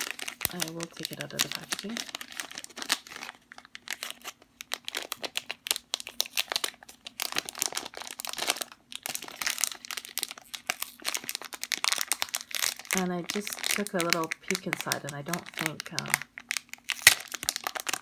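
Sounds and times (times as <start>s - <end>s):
plastic packaging crinkling: 0.0s - 18.0s.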